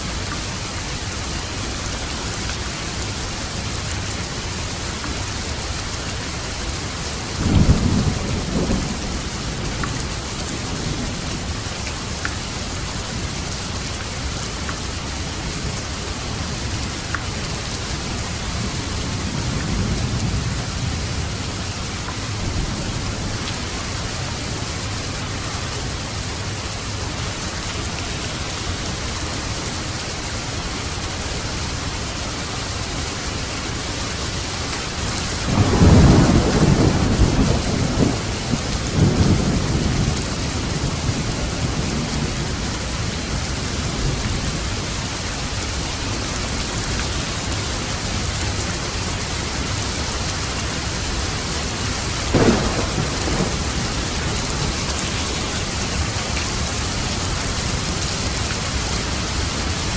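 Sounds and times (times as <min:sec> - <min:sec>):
steady rain: 0:00.0 - 0:59.9
thunder rumbling: 0:07.3 - 0:12.1, 0:35.3 - 0:44.6, 0:50.7 - 0:59.9
sharp thunder clap: 0:52.3 - 0:54.8.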